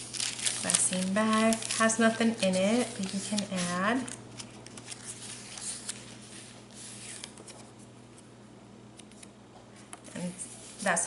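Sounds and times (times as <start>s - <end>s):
paper rustling: 0.0s - 7.8s
faint electrical hum: 0.0s - 11.0s.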